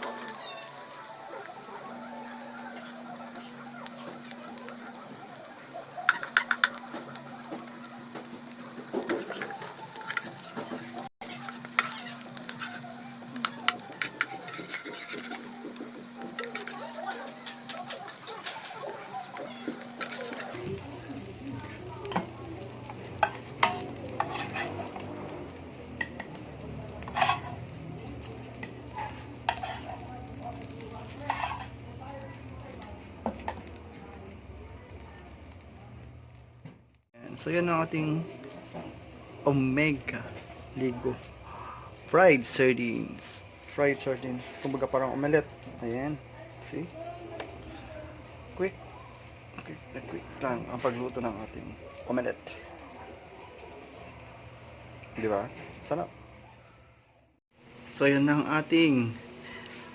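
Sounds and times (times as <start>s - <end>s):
oil sizzling in a pan: 0.0s - 59.9s
utensil scraping a pan: 13.4s - 20.6s, 23.1s - 25.3s, 26.9s - 27.7s, 28.6s - 30.2s, 31.0s - 31.8s.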